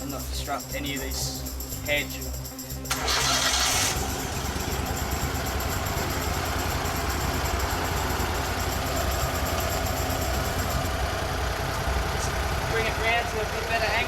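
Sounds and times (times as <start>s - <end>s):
stump grinder engine running: 2.9s - 14.0s.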